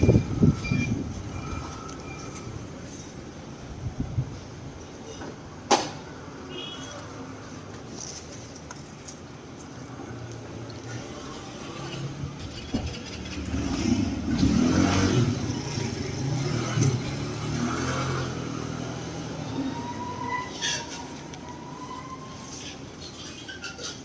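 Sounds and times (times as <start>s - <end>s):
road traffic rumble: 0.0s - 24.0s
vehicle passing close by: 13.1s - 20.4s.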